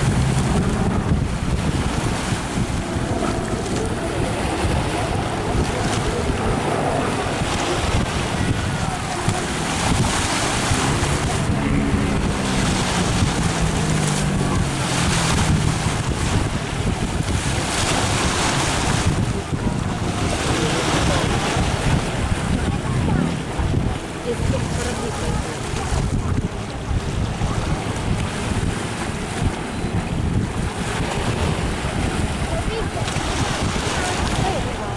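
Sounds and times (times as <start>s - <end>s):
propeller aircraft passing: 0.0s - 24.3s
wind buffeting microphone: 0.0s - 34.9s.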